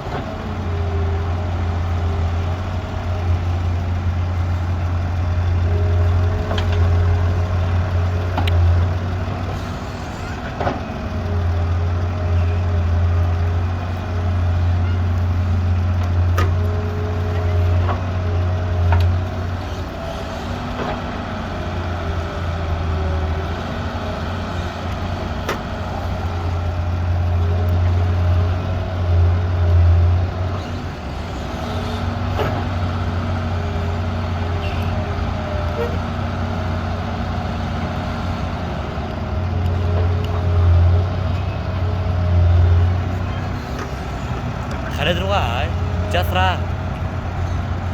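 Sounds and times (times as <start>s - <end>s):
excavator diesel engine droning: 0.0s - 47.9s.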